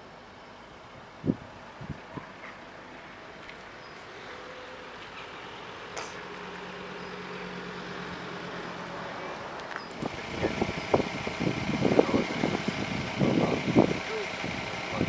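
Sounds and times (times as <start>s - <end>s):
vehicle engine running: 6.1s - 15.0s.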